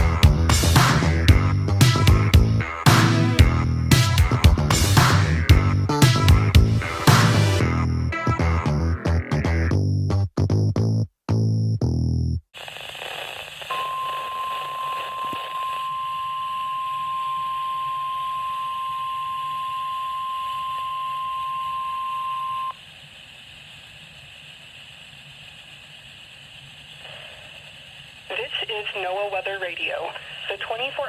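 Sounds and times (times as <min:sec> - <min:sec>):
radio receiver hiss: 0:12.6 - 0:31.0
high-pitched alarm tone: 0:13.7 - 0:22.8.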